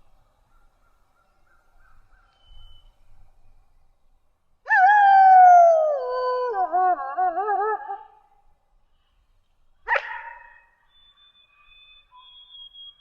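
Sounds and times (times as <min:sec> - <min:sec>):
wolf howling: 0:04.7 - 0:08.2.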